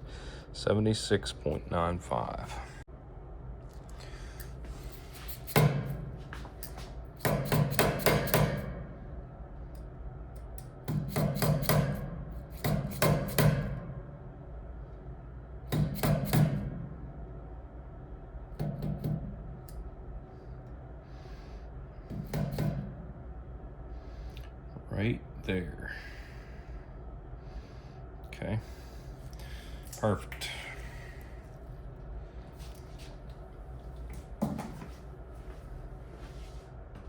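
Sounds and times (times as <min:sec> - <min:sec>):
hammer tapping on metal: 0:07.2 - 0:08.8, 0:10.9 - 0:13.8.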